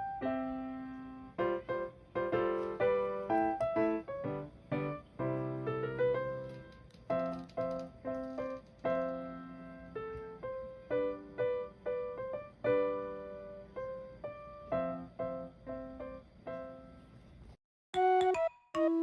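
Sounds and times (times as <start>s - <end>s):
gentle piano melody: 0.0s - 17.4s, 18.0s - 19.0s.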